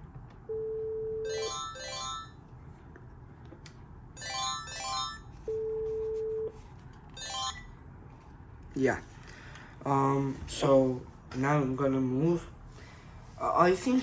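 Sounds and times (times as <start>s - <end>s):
warbling phone ring tones: 0.5s - 2.4s, 4.2s - 6.5s, 7.2s - 7.7s.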